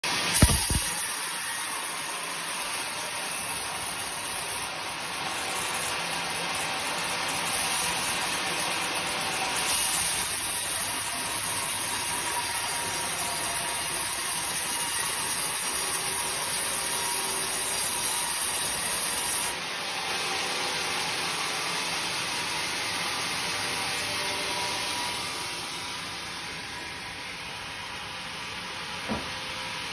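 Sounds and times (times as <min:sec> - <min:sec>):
woodworking machine hissing: 0:00.2 - 0:01.1.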